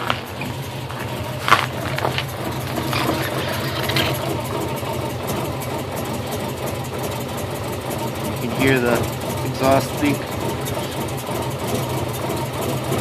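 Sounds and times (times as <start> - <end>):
car engine idling roughly: 0.0 - 13.0.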